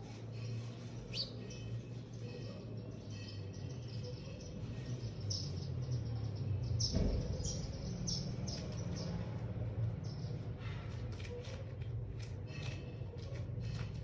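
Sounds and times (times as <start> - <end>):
small birds chirping: 0.0 - 10.6.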